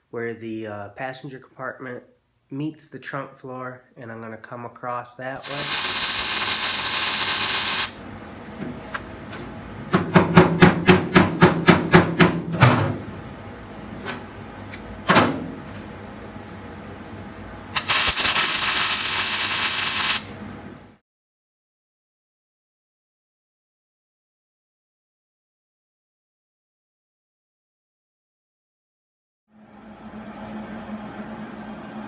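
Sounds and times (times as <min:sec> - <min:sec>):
short sharp weld zaps: 0:05.4 - 0:08.0, 0:17.8 - 0:20.4
welding arc crackling: 0:05.4 - 0:08.0, 0:17.7 - 0:20.4.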